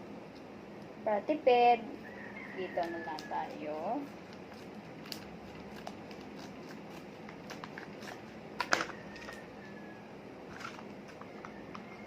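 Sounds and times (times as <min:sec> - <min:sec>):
scissors and plastic packet handling: 0:02.8 - 0:09.4, 0:10.5 - 0:11.6.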